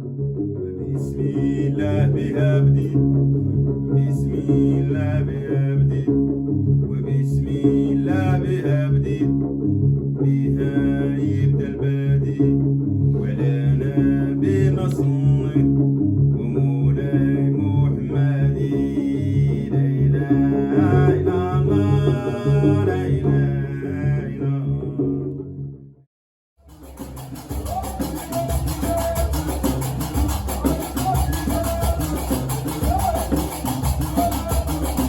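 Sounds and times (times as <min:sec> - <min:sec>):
person singing: 0:00.6 - 0:03.1, 0:13.2 - 0:15.7, 0:16.4 - 0:25.2, 0:26.8 - 0:35.0
low drone: 0:26.6 - 0:35.0
plucked string instrument: 0:26.6 - 0:35.0.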